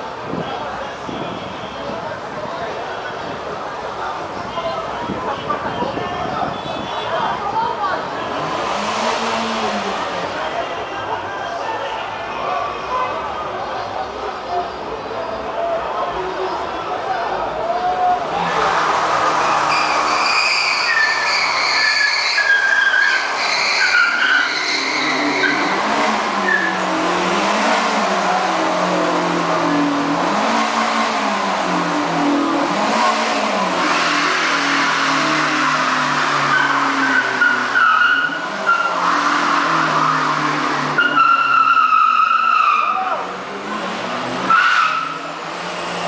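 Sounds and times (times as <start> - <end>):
car tyres squealing: 0.0 - 46.0
car engine revving: 7.8 - 10.6, 18.2 - 46.0.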